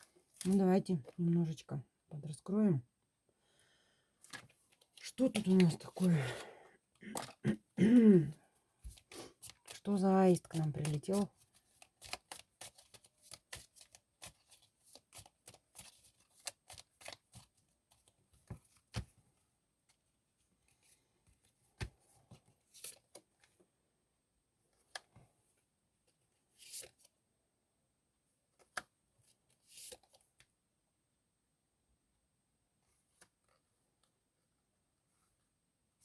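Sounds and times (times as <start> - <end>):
cards shuffling and tapping: 4.2 - 6.2, 8.8 - 19.2
cards sliding: 26.6 - 27.1, 29.6 - 30.2.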